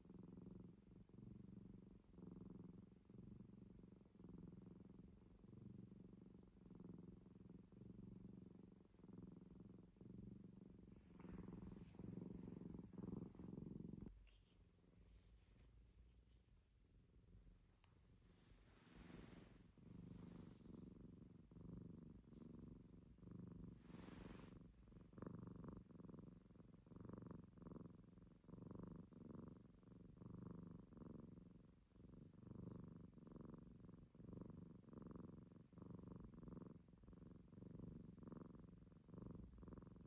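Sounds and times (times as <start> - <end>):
cat snoring: 18.5 - 29.5.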